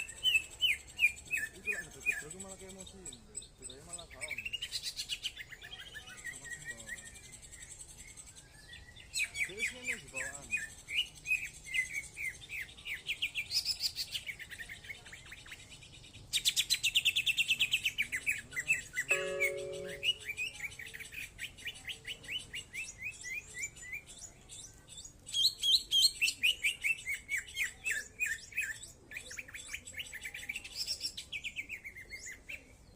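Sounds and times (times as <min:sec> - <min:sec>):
bird singing chirps and trills: 0:00.0 - 0:32.9
brief low steady tone: 0:19.1 - 0:20.2.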